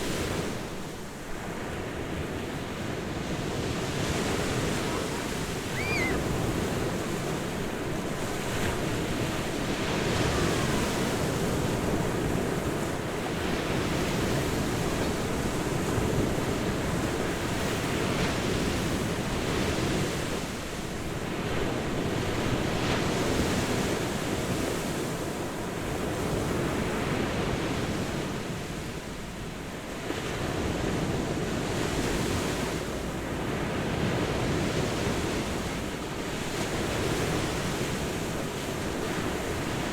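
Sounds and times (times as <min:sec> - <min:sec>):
ocean surf breaking on beach: 0:00.0 - 0:39.9.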